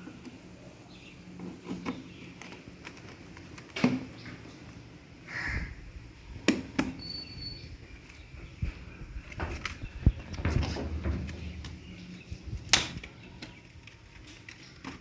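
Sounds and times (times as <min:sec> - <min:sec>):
hard objects clicking and knocking: 0:08.5 - 0:15.0.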